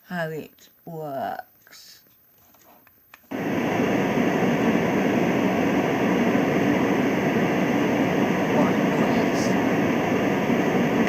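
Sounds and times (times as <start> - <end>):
white noise machine rushing: 3.3 - 11.0.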